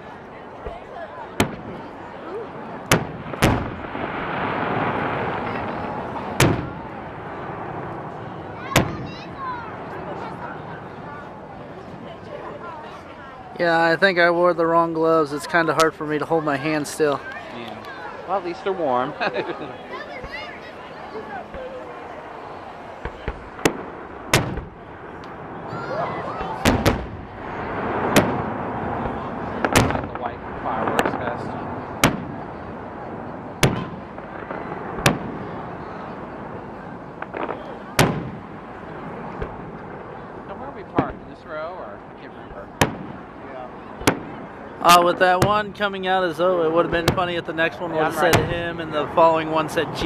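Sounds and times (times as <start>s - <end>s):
fireworks bangs: 0.0s - 50.0s
steady rushing noise: 1.2s - 50.0s
fireworks crackling hiss: 2.9s - 9.1s.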